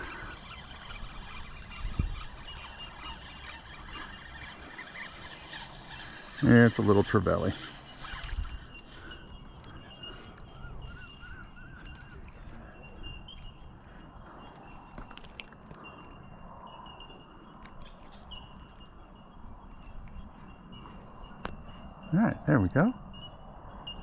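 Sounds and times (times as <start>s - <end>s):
thin high whine: 0.0s - 13.5s
bird chirps: 0.0s - 24.0s.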